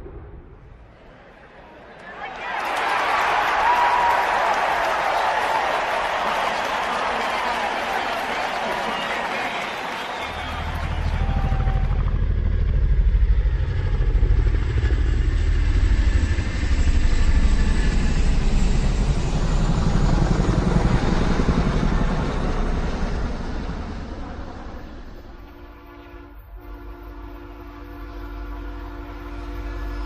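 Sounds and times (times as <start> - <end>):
deep pulsing engine note: 10.3 - 30.0.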